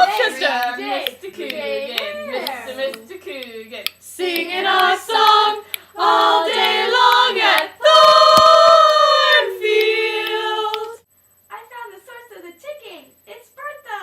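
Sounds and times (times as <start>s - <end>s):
a cappella voices singing: 0.0s - 11.1s.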